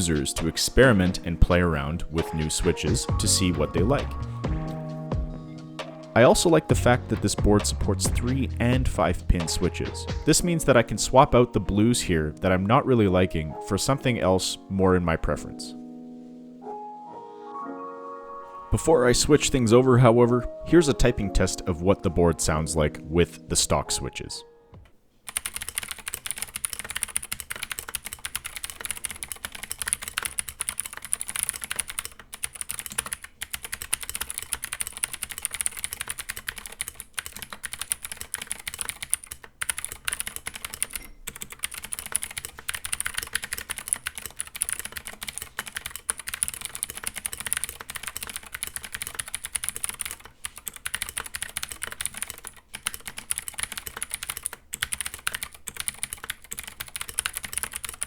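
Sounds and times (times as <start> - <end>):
clicky mechanical keyboard typing: 25.3 - 58.0.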